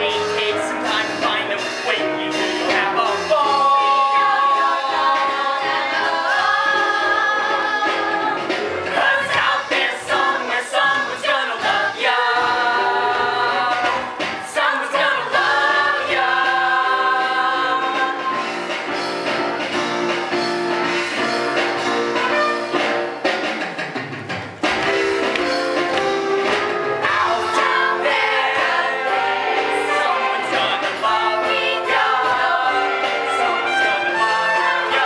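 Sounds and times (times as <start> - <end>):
group singing held notes: 3.0 - 18.5, 27.0 - 35.0.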